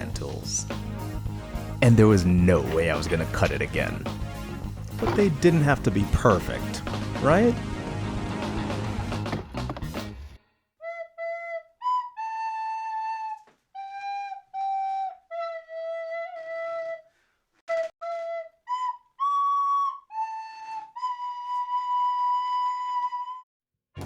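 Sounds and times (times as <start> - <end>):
solo flute slow melody: 10.8 - 23.5.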